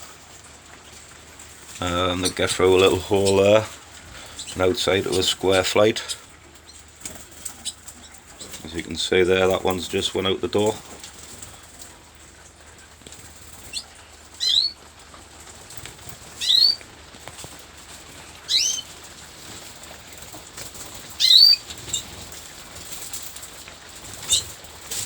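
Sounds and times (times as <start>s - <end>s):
canary chirps: 1.6s - 8.7s, 12.4s - 14.9s, 16.0s - 17.5s, 18.4s - 19.1s, 20.3s - 23.2s, 24.0s - 25.0s.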